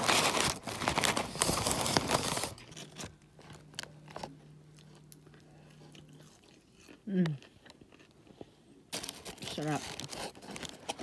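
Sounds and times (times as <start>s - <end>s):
paper wrapper crinkling: 0.0s - 4.3s, 8.9s - 11.0s
low steady hum: 0.0s - 11.0s.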